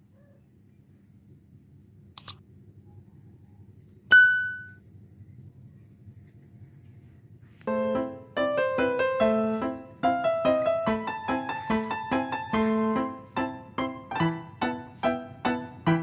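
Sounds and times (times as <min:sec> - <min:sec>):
quick clicks: 0:02.2 - 0:02.4
bright ding: 0:04.1 - 0:04.8
piano music: 0:07.7 - 0:16.0.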